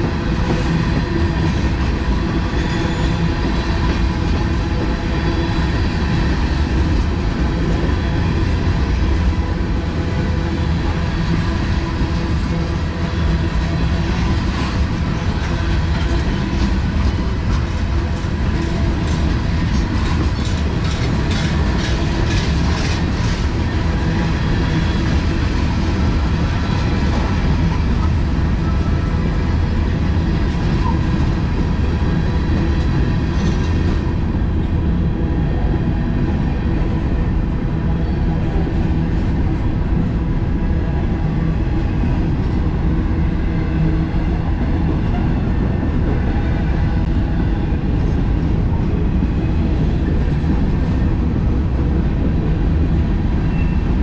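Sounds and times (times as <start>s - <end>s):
freight train rumbling past: 0.0s - 54.0s
wheels clacking over rail joints: 13.6s - 26.2s.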